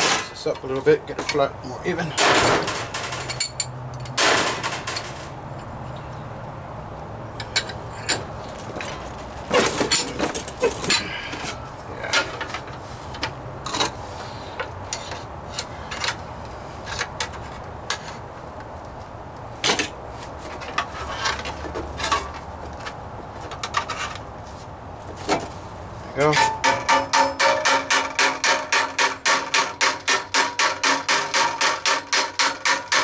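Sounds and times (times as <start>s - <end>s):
hammer striking sheet metal: 4.2s - 5.2s, 26.4s - 33.0s.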